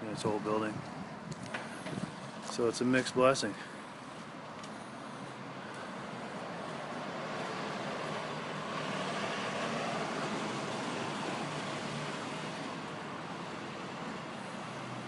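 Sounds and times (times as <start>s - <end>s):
vehicle passing by: 4.8s - 15.0s.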